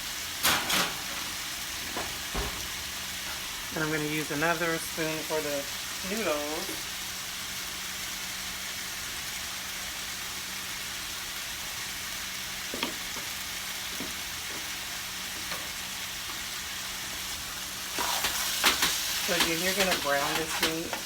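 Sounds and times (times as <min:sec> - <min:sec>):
meat and onions sizzling in pan: 0:00.0 - 0:21.0
spoon stirring meat: 0:18.0 - 0:21.0.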